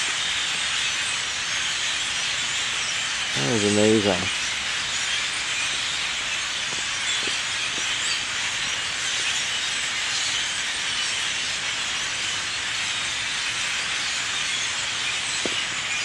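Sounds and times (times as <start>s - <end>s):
flock of birds chirping: 0.0s - 16.0s.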